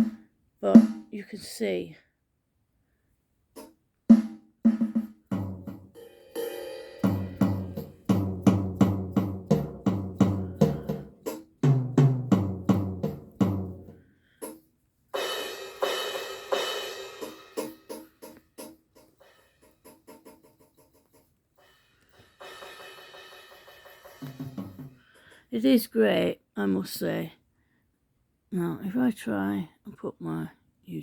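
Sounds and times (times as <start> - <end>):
electronic drum hits: 0.0 - 0.2, 6.6 - 13.9
electronic cymbal hits: 6.0 - 8.6.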